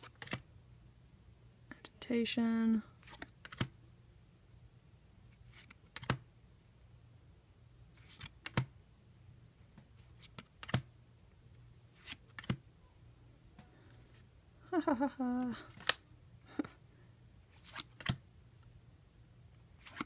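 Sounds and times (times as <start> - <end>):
trading cards tapping and snapping: 0.0 - 0.4, 3.1 - 3.7, 5.6 - 6.2, 8.0 - 8.7, 10.2 - 10.9, 12.0 - 12.6, 15.7 - 16.0, 17.6 - 18.2
faint low hum: 0.0 - 20.0.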